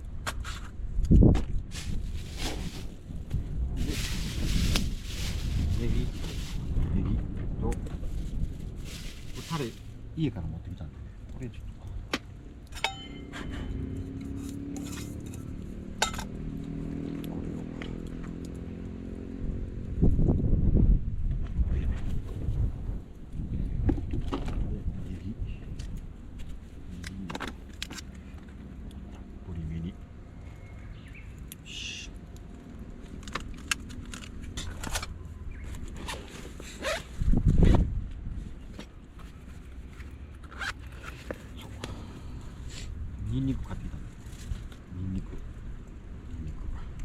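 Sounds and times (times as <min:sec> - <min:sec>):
wind rumble on microphone: 0:00.0 - 0:12.2, 0:13.3 - 0:27.9, 0:32.9 - 0:40.0, 0:42.4 - 0:47.0
crinkle: 0:01.7 - 0:06.8, 0:07.8 - 0:10.0
utensils and containers clinking: 0:12.7 - 0:16.3.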